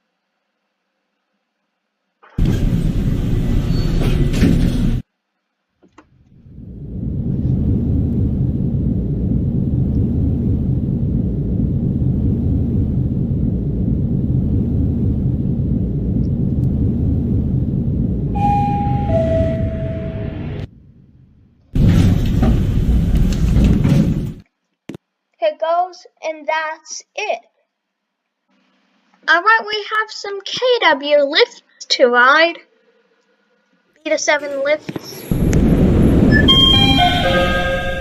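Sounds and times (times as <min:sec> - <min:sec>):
lift car rumbling: 0:02.4 - 0:05.0, 0:06.4 - 0:20.8, 0:21.8 - 0:24.4, 0:35.3 - 0:38.0
two-note falling arrival chime: 0:18.4 - 0:20.7, 0:36.3 - 0:38.0
short loud burst of noise: 0:35.2 - 0:38.0.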